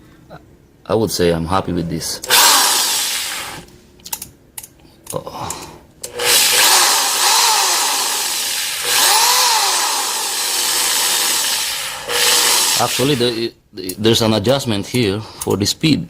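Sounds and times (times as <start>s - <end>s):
cordless drill motor running: 2.2s - 3.7s, 6.1s - 13.4s.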